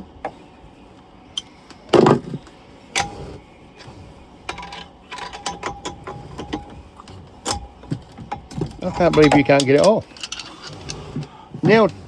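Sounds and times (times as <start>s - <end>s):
hand tools knocking on metal: 7.5s - 10.4s.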